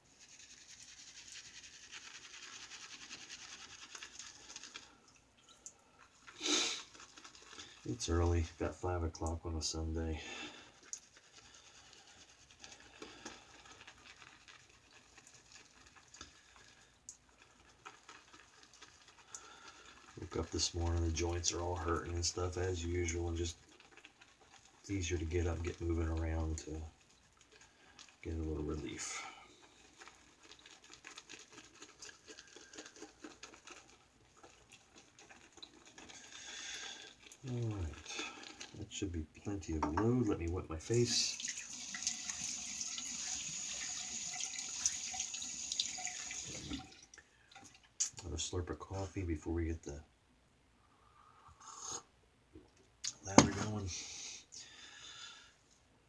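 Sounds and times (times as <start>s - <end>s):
shaving brush scratching soap: 0.0s - 5.0s, 6.1s - 44.3s, 53.2s - 54.3s.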